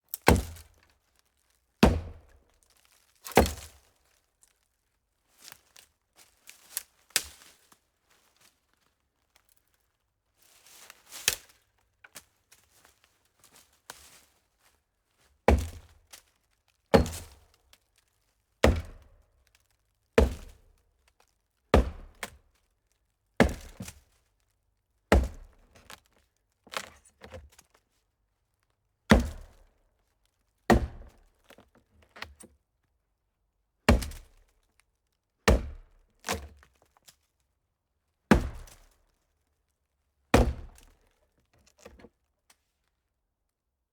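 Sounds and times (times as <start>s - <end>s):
axe chopping hollow tree trunk: 0.2s - 0.8s, 1.8s - 2.4s, 3.3s - 3.8s, 15.5s - 16.0s, 16.9s - 17.5s, 18.6s - 19.1s, 20.2s - 20.6s, 21.7s - 22.4s, 23.4s - 24.0s, 25.1s - 26.0s, 29.1s - 29.7s, 30.7s - 31.3s, 33.9s - 34.4s, 35.5s - 36.6s, 38.3s - 39.0s, 40.3s - 41.0s.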